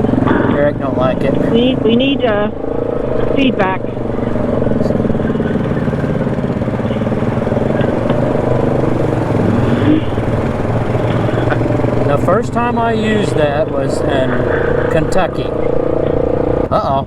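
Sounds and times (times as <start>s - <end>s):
atv engine running: 0.0s - 17.0s.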